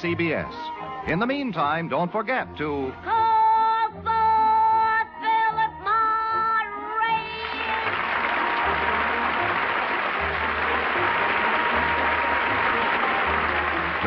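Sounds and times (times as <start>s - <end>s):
closing music: 7.2s - 14.0s
audience applause: 7.3s - 14.0s.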